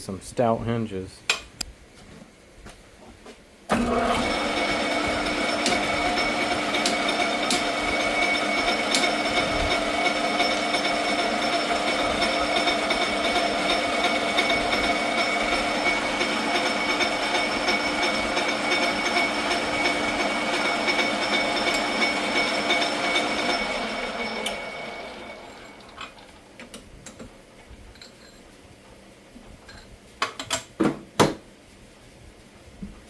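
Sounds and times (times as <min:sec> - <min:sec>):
metal lathe humming: 0:03.7 - 0:26.3.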